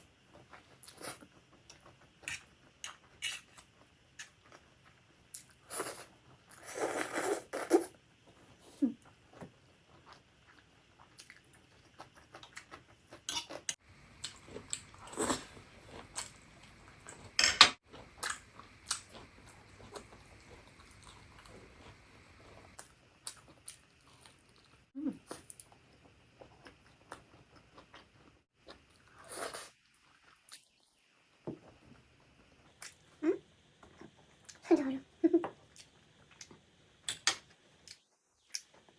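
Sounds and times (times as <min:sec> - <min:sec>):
chewing and biting: 0:10.0 - 0:24.7
utensils clicking on dish: 0:17.2 - 0:17.8.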